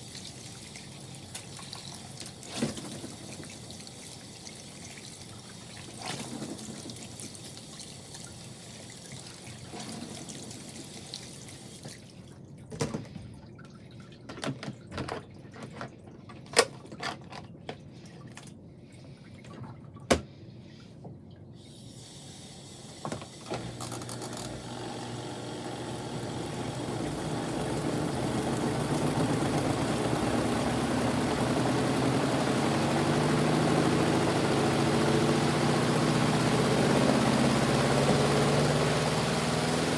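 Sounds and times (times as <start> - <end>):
washing machine motor humming: 0.0 - 11.9, 22.0 - 39.9.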